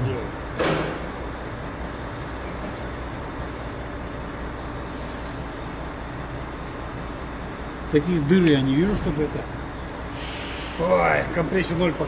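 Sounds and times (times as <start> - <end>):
constant low hum: 0.0 - 12.0.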